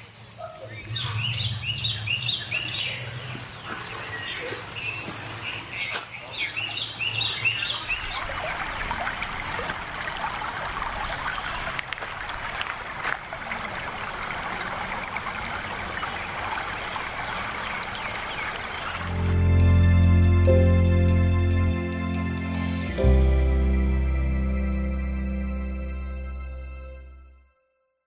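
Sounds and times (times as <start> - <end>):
bird chirping: 0.0 - 8.2
stream babbling over stones: 7.9 - 19.0.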